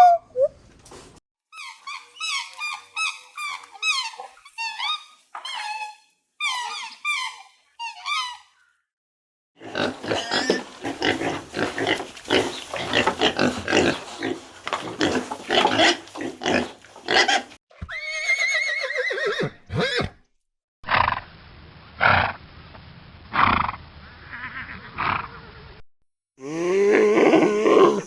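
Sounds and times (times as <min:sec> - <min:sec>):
animal grunting: 0:09.6 - 0:17.6
deep drawn-out animal call: 0:23.3 - 0:25.6.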